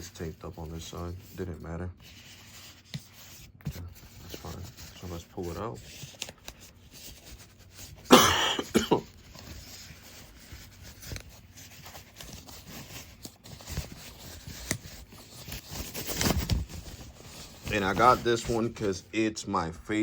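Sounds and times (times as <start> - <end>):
packaging rustling: 2.0 - 19.1
person coughing: 8.0 - 9.1.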